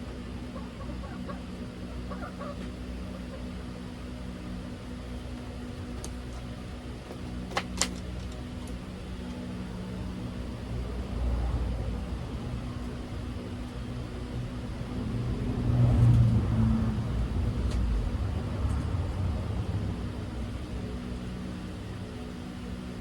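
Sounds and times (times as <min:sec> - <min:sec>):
low engine-like hum: 0:00.0 - 0:23.0
low rumble: 0:13.9 - 0:20.8.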